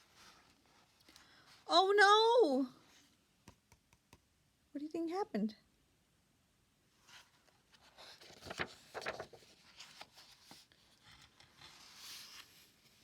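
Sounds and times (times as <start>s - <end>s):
book pages rustling: 7.0s - 13.0s.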